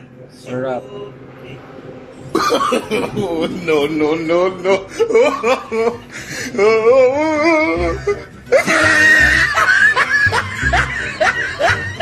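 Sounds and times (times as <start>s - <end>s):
wavering vocal line: 2.7s - 12.0s.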